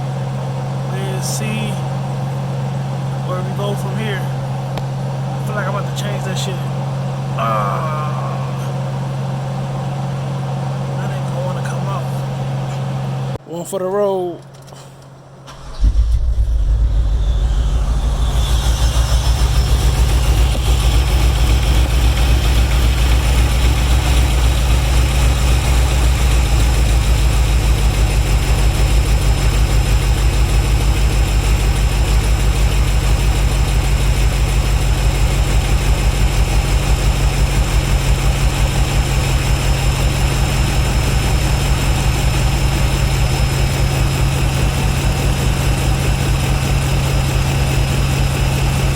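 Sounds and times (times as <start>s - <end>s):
car engine starting and idling: 14.5s - 48.9s.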